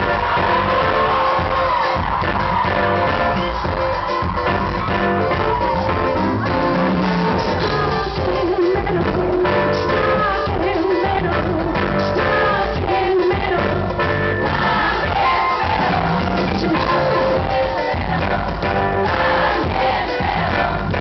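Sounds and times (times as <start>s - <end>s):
live band playing pop: 0.0s - 21.0s
person singing: 5.3s - 20.2s.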